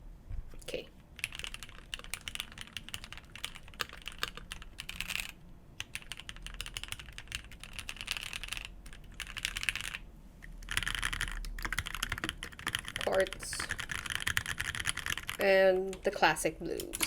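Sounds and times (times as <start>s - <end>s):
typing on mechanical keyboard: 1.2s - 16.1s, 16.7s - 17.0s.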